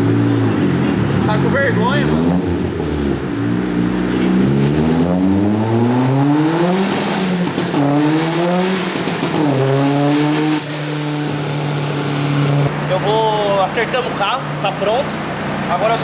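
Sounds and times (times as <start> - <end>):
car engine revving at full throttle: 0.0 - 16.0.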